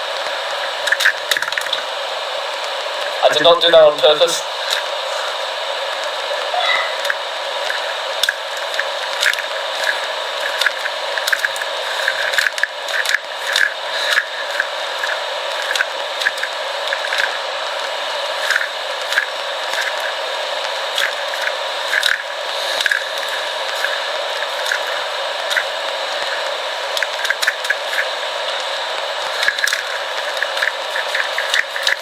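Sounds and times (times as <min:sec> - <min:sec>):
speed cube clicking: 0:00.8 - 0:01.9, 0:07.0 - 0:17.4, 0:18.4 - 0:28.2, 0:29.0 - 0:32.0.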